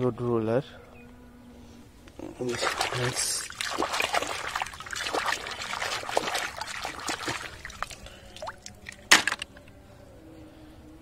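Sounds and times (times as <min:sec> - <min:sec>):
water trickling and splashing: 0:02.2 - 0:09.3.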